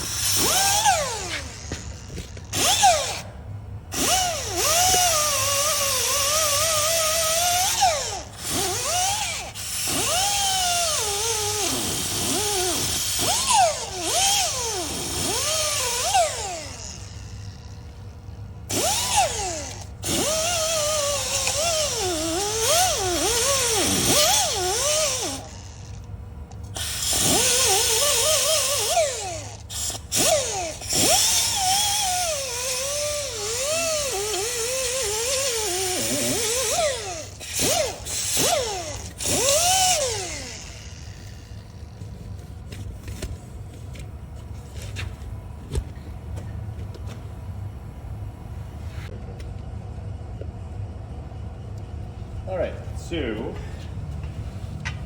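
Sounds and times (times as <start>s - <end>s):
power tool buffing metal: 26.8s - 41.0s.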